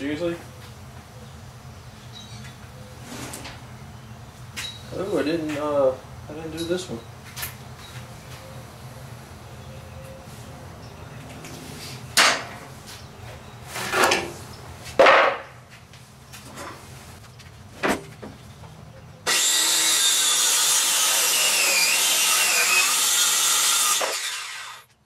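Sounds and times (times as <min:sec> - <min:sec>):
power saw cutting wood: 0:19.3 - 0:25.0.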